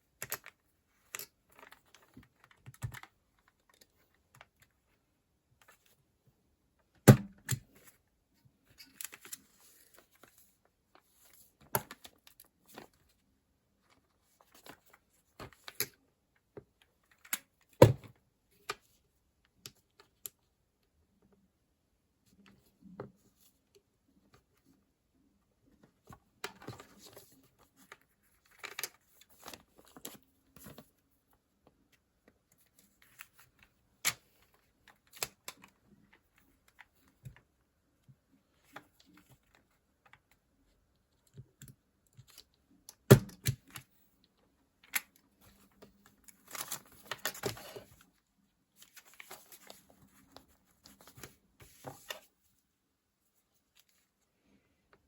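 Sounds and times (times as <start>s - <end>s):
paper rustling: 48.8s - 52.3s.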